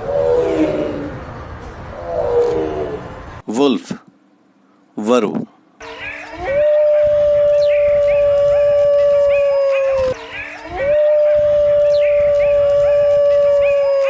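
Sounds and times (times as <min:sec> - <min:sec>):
wolf howling: 0:00.0 - 0:01.3, 0:01.9 - 0:03.1, 0:06.3 - 0:14.0.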